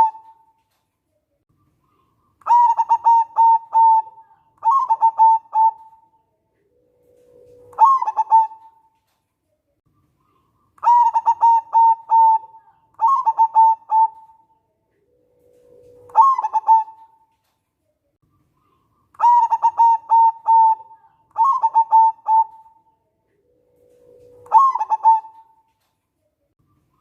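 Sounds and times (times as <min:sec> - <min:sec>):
dove cooing: 0:00.0 - 0:00.5, 0:01.9 - 0:08.9, 0:10.8 - 0:17.3, 0:18.7 - 0:25.7.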